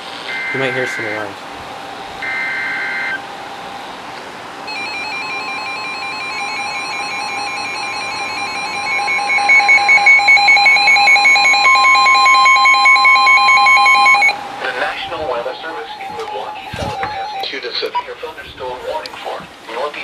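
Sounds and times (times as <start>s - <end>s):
weather radio alert alarms: 0.0s - 20.0s
steady warning alert tone: 0.2s - 20.0s.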